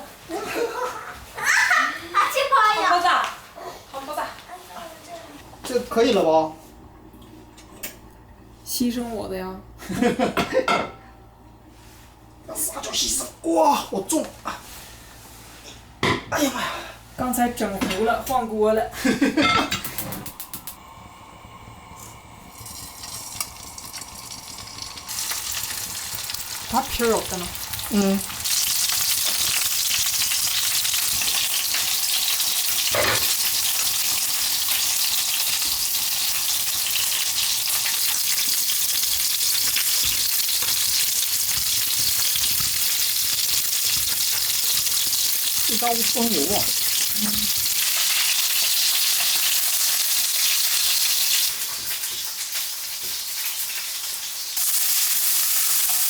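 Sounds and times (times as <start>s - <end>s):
food sizzling in hot oil: 19.1s - 56.0s.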